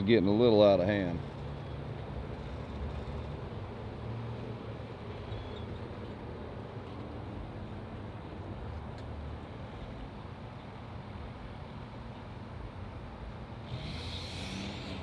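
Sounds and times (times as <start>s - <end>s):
engines humming: 13.5s - 15.0s.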